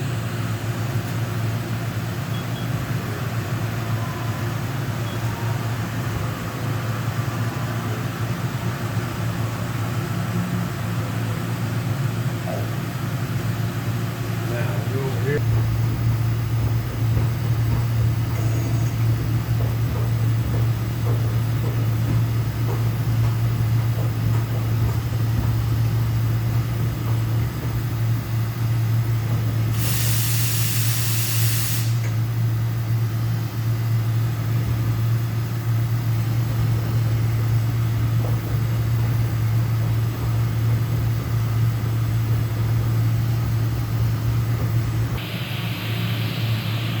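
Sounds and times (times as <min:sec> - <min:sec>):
burst of hiss: 0:29.7 - 0:32.2.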